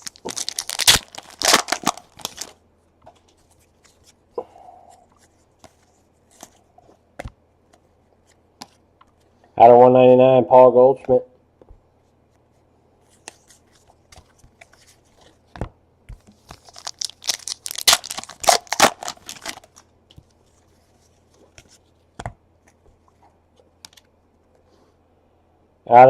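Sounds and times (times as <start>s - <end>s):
wrapper ripping and crinkling: 0.0s - 2.6s, 16.6s - 19.8s
cards clicking and rustling: 0.0s - 4.2s, 16.2s - 20.7s.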